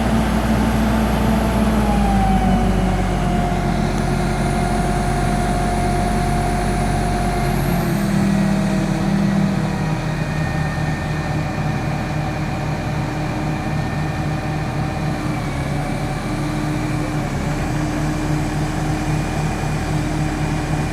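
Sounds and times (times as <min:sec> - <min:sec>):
heavy engine running: 0:00.0 - 0:20.9.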